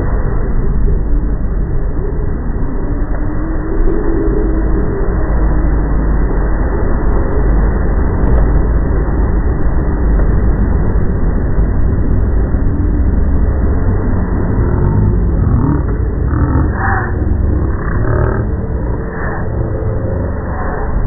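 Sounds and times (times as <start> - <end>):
low rumble in sky: 0.0 - 21.0
faint wavering moan: 12.3 - 21.0.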